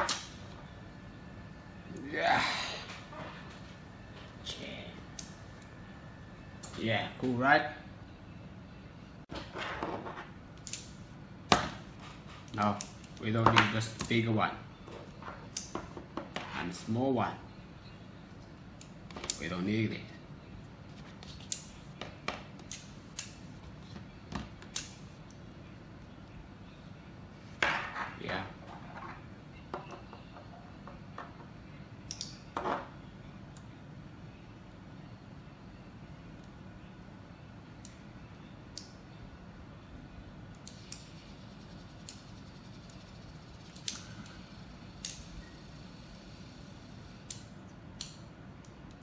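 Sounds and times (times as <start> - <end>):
magnets clicking together: 10.6 - 11.0, 24.7 - 25.4, 32.0 - 32.5, 43.6 - 44.4, 45.0 - 45.4, 47.2 - 49.0
magnetic pieces clicking together: 32.0 - 32.4, 43.6 - 44.4.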